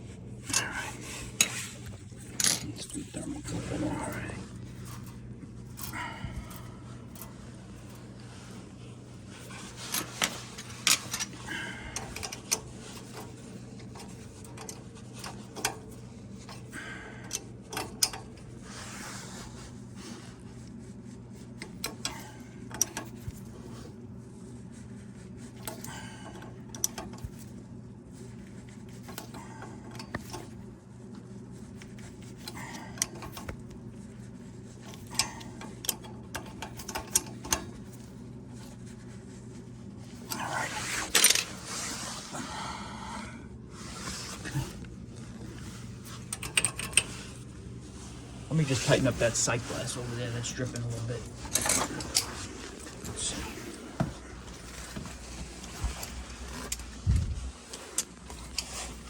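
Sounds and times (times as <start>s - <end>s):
low hum: 37.5s - 59.0s
hand tools tapping on metal: 46.3s - 47.1s.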